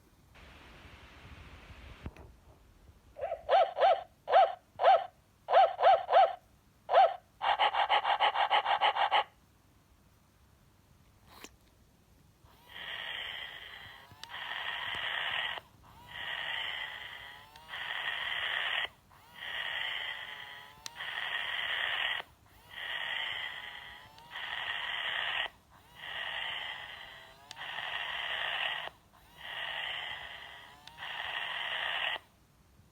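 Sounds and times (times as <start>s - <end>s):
toy snoring from small speaker: 12.5s - 32.3s.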